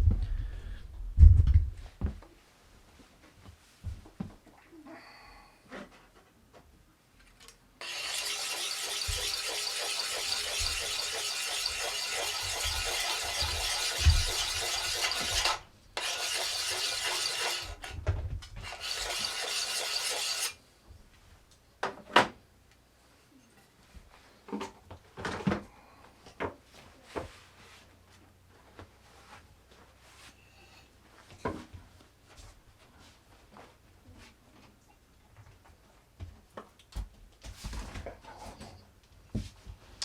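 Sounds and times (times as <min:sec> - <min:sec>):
axe being sharpened rasping: 0:07.8 - 0:17.9, 0:18.7 - 0:20.6.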